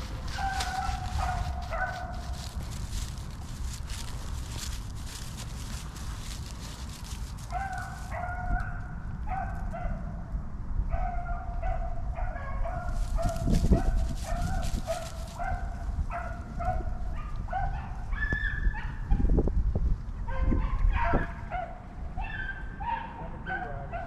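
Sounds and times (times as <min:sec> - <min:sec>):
dogs baying: 0:00.0 - 0:03.1, 0:07.5 - 0:09.8
steady low rumble: 0:00.0 - 0:11.0.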